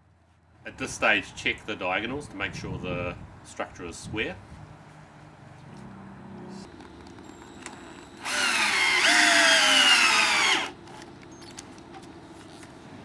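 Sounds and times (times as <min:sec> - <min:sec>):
cordless drill driving screw into wood: 0:08.2 - 0:10.8.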